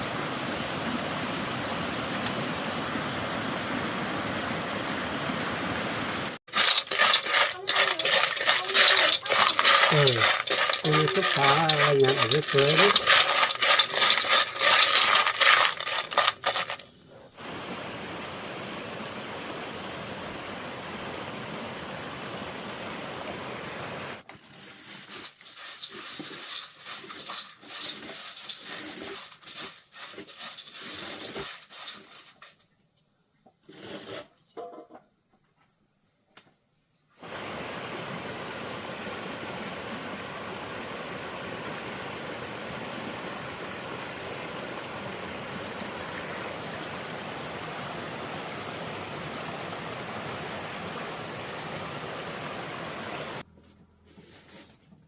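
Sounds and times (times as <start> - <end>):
mountain stream rushing: 0.0 - 16.8, 17.4 - 24.2, 37.2 - 53.4
clattering and clinking: 6.5 - 16.9.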